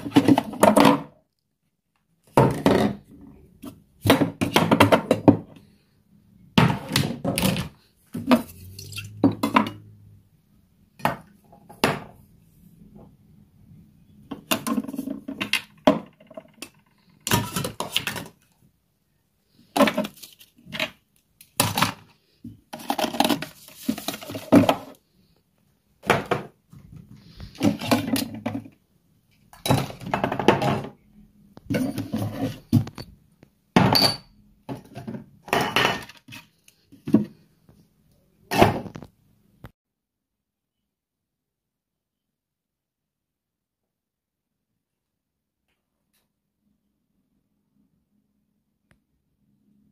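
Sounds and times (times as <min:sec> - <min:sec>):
dishes clattering and clinking: 0:33.8 - 0:36.3.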